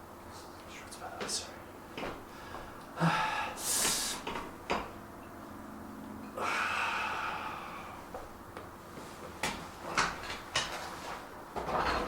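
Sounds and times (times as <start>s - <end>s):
person breathing hard: 2.3s - 4.3s, 6.4s - 8.2s.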